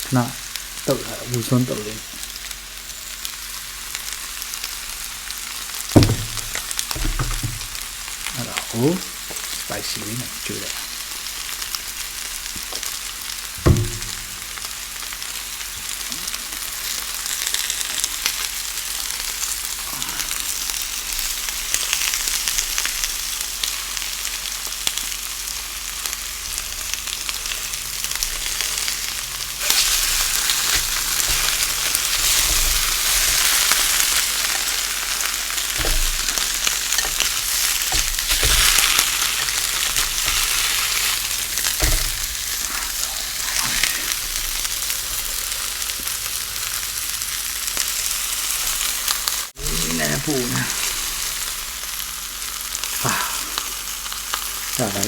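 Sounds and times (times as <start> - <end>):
food sizzling in a pan: 0.0 - 55.0
sharp knock: 6.0 - 7.7, 13.6 - 14.6
dull knocks: 6.0 - 7.9, 13.6 - 14.5.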